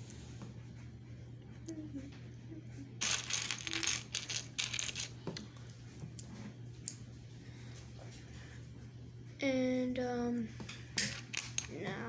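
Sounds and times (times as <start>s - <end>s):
plastic bricks clattering: 3.0s - 5.1s.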